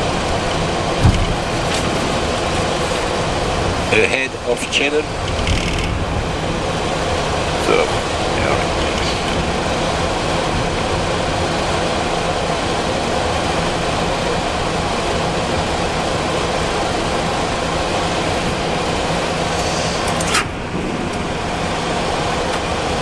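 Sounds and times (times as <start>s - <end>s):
jet engines idling: 0.0s - 23.0s.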